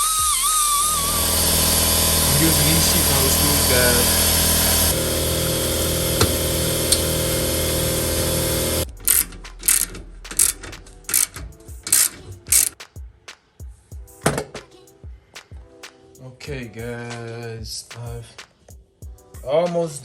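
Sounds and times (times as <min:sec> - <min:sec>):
power drill driving screws: 0:00.0 - 0:12.8
short sharp clicking bursts: 0:09.0 - 0:12.8.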